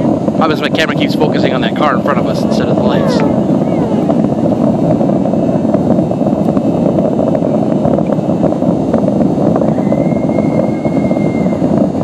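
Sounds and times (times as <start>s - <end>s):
distant fireworks rumble: 0.0s - 12.0s
high steady whistle: 9.6s - 11.7s.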